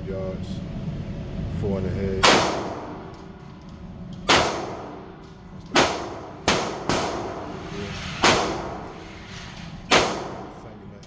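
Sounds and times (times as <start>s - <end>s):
gunshots echoing indoors: 2.2s - 3.2s, 4.2s - 7.5s, 8.2s - 9.0s, 9.9s - 10.7s.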